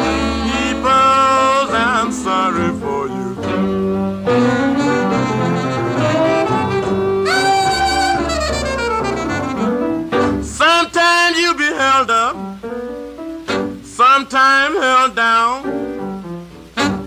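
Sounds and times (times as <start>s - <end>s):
saxophone melody: 0.0s - 10.6s, 16.7s - 17.0s
rhythm and blues band: 0.0s - 10.8s, 12.1s - 14.2s, 15.7s - 17.0s.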